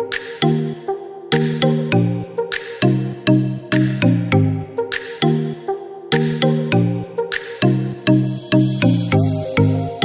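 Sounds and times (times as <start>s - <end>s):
electronic music with fast beat: 7.4s - 10.0s.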